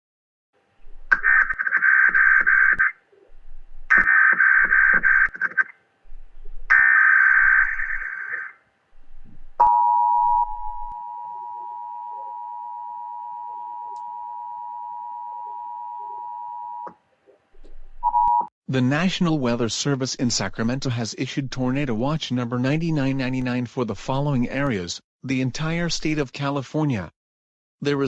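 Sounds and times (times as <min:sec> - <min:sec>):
screeching digital header bursts: 0:03.9 - 0:05.6, 0:06.7 - 0:08.6
high attention tone: 0:09.6 - 0:16.9.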